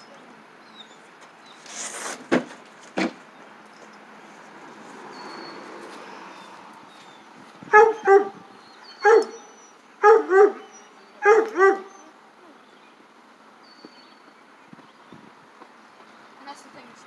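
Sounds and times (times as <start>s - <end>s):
animal barking calls: 7.6s - 12.2s.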